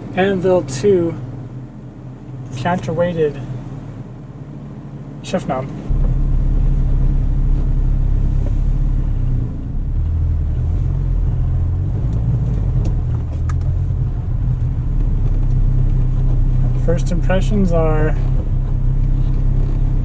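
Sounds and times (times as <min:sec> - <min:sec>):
car engine driving off: 0:00.0 - 0:20.0.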